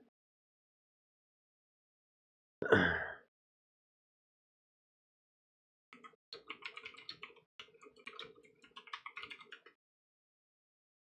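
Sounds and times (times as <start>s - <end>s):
typing on computer keyboard: 6.0s - 9.8s.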